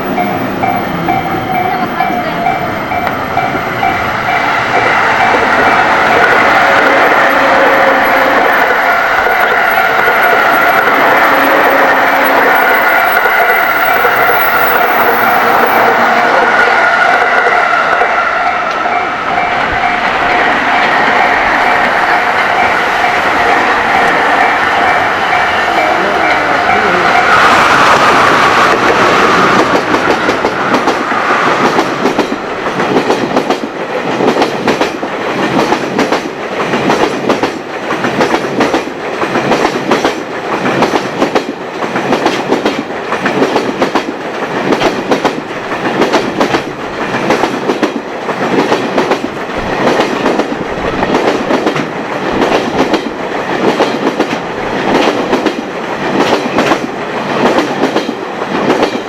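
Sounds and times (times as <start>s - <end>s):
high tone: 0.0s - 27.4s
train wheels clacking over rail joints: 0.0s - 59.0s.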